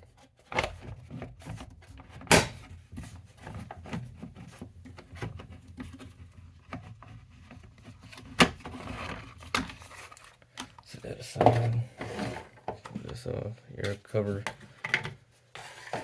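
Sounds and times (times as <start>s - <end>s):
plastic cover clicking and rattling: 3.5s - 11.7s.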